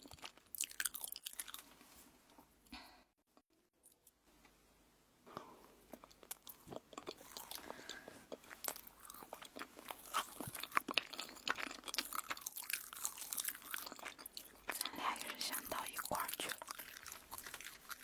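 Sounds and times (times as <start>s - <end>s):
crunchy food chewing: 0.0s - 2.0s, 5.8s - 18.0s.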